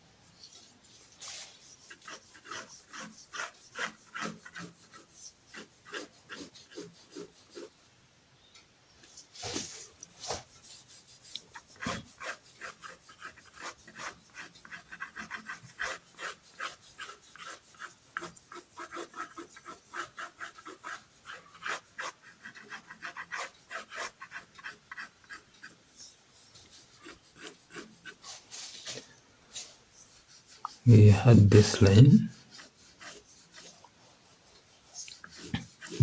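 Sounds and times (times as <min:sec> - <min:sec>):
pencil scratching on paper: 0:00.5 - 0:07.8, 0:09.1 - 0:28.9, 0:29.6 - 0:36.0.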